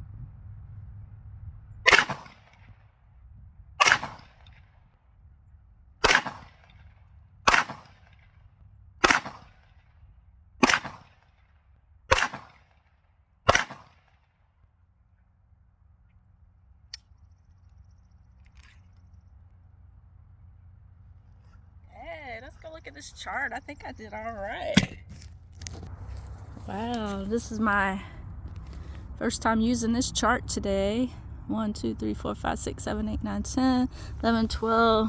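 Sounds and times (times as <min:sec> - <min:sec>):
handgun shots: 0:01.9 - 0:02.5, 0:03.8 - 0:04.3, 0:06.0 - 0:06.6, 0:07.5 - 0:08.0, 0:09.0 - 0:09.5, 0:10.6 - 0:11.1, 0:12.1 - 0:12.6, 0:13.5 - 0:14.0.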